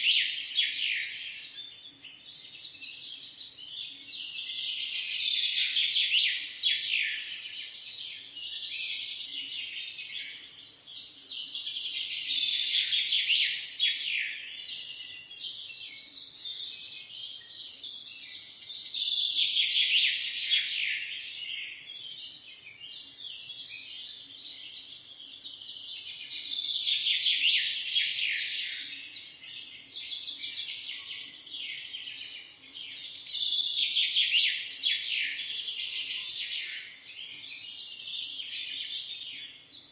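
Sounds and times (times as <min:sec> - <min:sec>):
birds chirping in chorus: 0:00.0 - 0:39.9.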